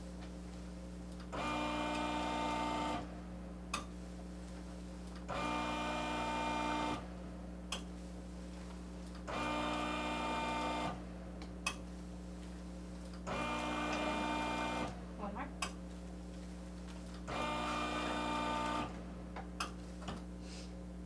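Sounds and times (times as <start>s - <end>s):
traction table motor whining: 17.3s - 19.0s.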